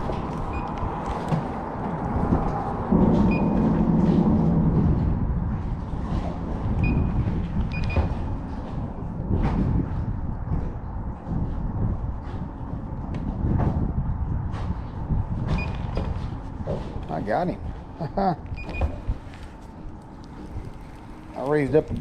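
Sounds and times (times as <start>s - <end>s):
road traffic rumble: 0.0s - 11.4s, 14.0s - 22.0s
vehicle passing: 16.3s - 22.0s.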